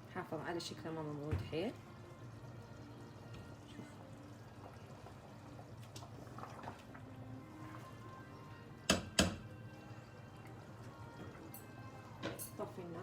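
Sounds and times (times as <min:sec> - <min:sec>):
stew bubbling in a pot: 0:00.0 - 0:13.0
utensil knocking on pot: 0:08.9 - 0:09.4.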